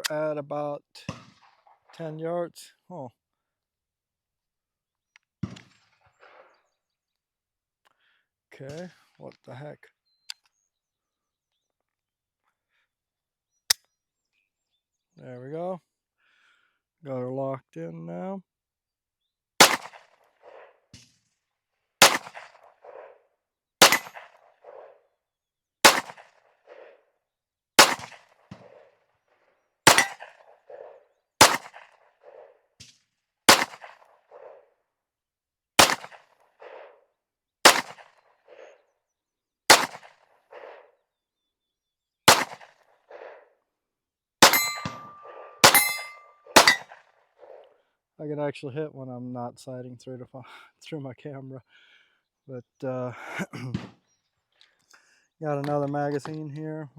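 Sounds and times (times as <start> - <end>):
pistol shots: 19.6 - 20.7, 22.0 - 23.2, 23.8 - 24.9, 25.8 - 26.9, 27.8 - 28.8, 29.9 - 32.5, 33.5 - 34.6, 35.8 - 37.0, 37.7 - 38.7, 39.7 - 40.8, 42.3 - 43.4, 44.4 - 47.0.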